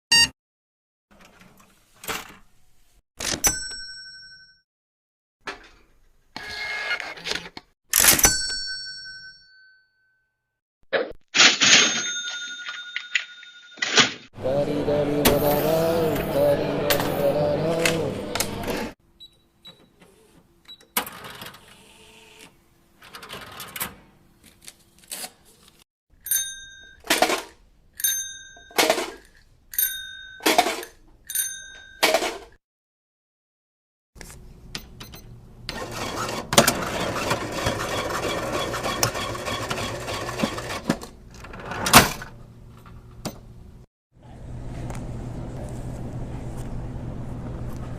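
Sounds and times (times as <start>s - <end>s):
cash register mechanical rattling: 20.9s - 22.3s, 23.0s - 24.1s, 26.9s - 27.6s, 28.6s - 29.3s, 30.4s - 31.0s, 35.7s - 42.4s.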